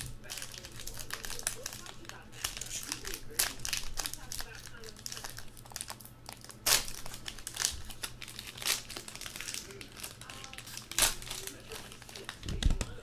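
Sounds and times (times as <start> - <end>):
plastic wrapping crinkling and tearing: 0.0 - 13.0.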